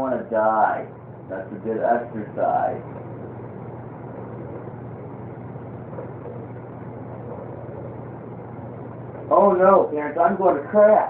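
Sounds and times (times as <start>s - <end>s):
mechanical hum with hiss: 0.0s - 11.0s.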